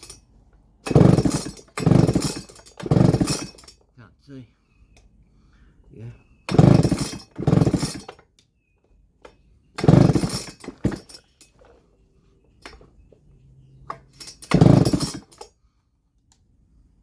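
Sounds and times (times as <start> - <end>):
chainsaw recoil starter pulled: 0.0 - 3.9, 6.5 - 8.4, 9.2 - 11.8, 12.6 - 12.9, 13.8 - 15.6
engine cranking without firing: 0.0 - 3.9, 6.4 - 8.4, 9.2 - 11.9, 12.5 - 15.6
small handling clicks: 16.1 - 16.5.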